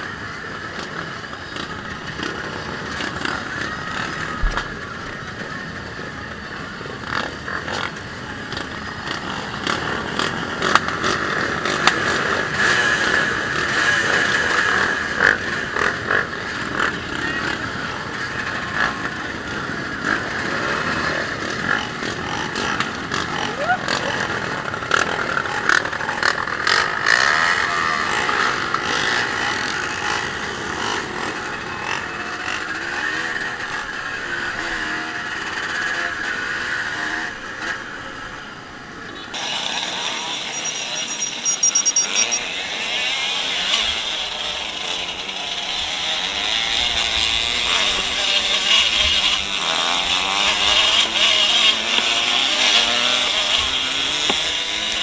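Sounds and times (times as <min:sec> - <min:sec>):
motorcycle engine running: 0:39.4 - 0:55.0.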